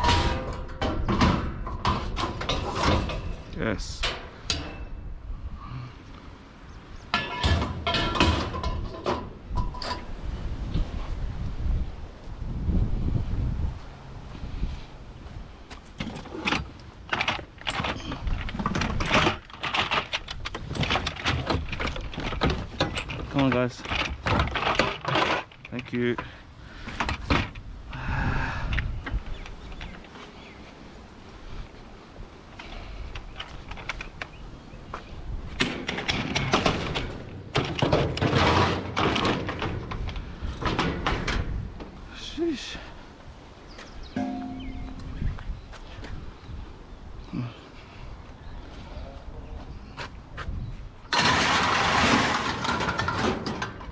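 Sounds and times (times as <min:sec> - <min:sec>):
objects clattering and scraping: 0:00.0 - 0:05.0, 0:07.0 - 0:11.1, 0:15.7 - 0:30.6, 0:35.5 - 0:42.0, 0:44.1 - 0:45.3, 0:51.1 - 0:53.9.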